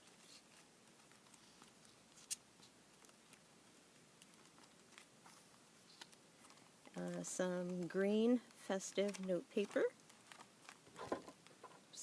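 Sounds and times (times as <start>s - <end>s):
paper rustling: 4.2s - 11.8s
plastic notebook pieces clicking: 6.0s - 11.5s.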